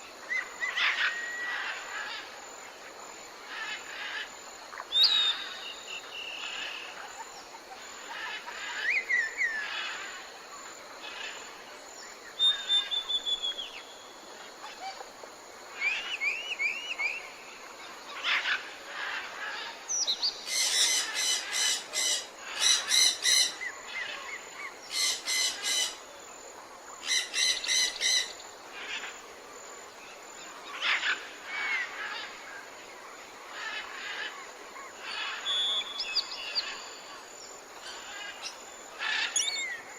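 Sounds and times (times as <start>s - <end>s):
whistled bird notes: 4.9s - 6.5s, 12.4s - 13.9s, 35.4s - 36.8s
birds chirping and calling: 18.2s - 26.0s, 37.8s - 39.9s.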